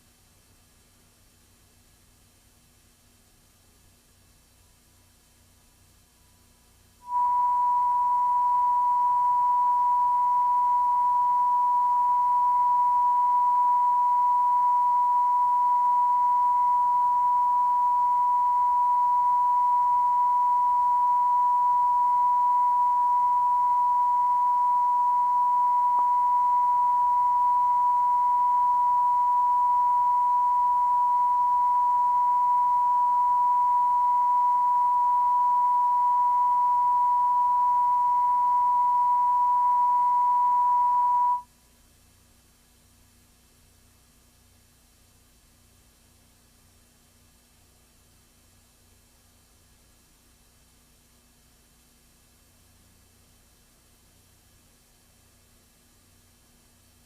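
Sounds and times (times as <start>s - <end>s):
sine test tone: 7.0s - 41.5s.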